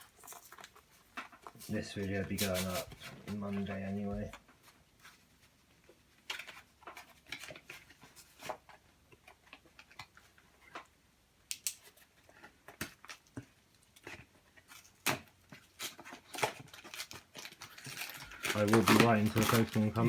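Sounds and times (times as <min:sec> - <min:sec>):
plastic blister pack crinkling: 0:14.7 - 0:20.0.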